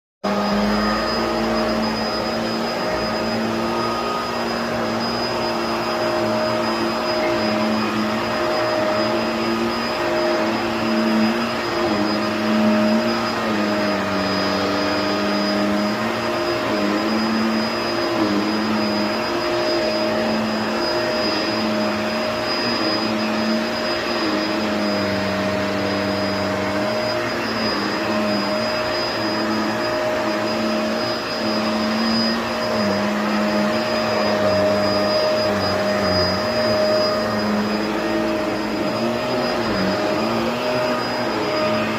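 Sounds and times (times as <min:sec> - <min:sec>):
vacuum cleaner running: 0:00.2 - 0:41.9.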